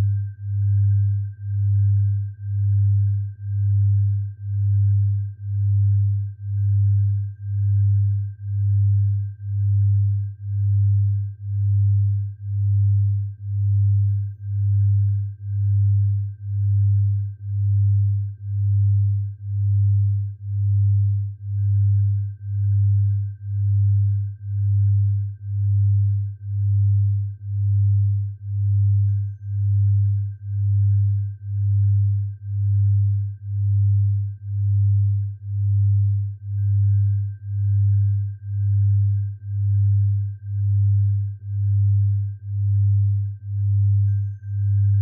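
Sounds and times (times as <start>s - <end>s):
low pulsing sine tone: 0.0s - 45.0s.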